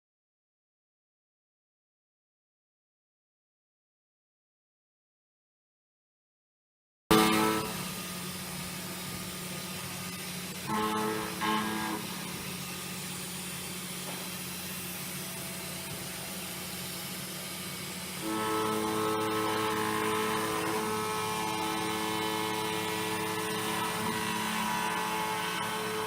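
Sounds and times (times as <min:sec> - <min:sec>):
milling machine humming: 0:07.1 - 0:26.0
multi-pitched whine: 0:07.1 - 0:26.0.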